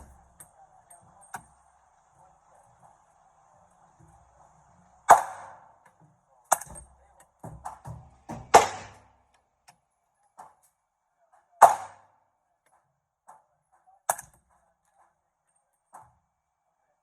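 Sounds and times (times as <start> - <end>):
suppressed gunshots: 5.1 - 5.7, 8.5 - 9.0.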